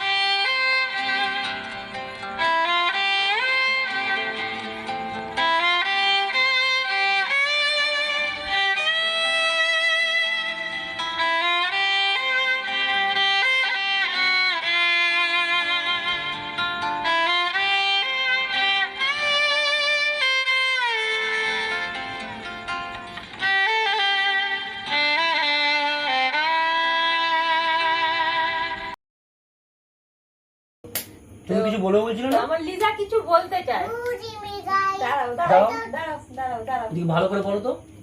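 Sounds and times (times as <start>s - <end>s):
slow violin melody: 0.0s - 29.0s.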